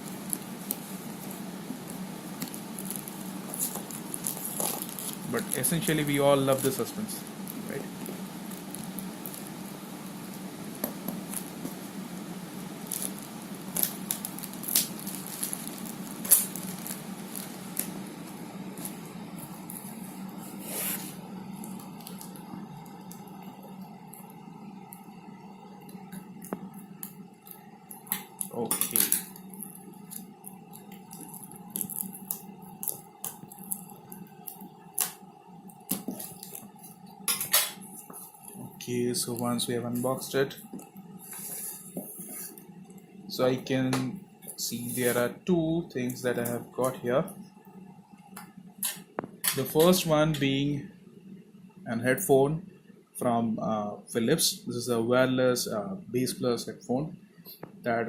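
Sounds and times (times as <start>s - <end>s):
packaging rustling and crackling: 0.0s - 9.5s, 12.8s - 23.3s, 26.1s - 42.6s
steady low hum: 0.0s - 58.0s
packaging crinkling and clicking: 2.4s - 5.8s, 12.8s - 18.0s.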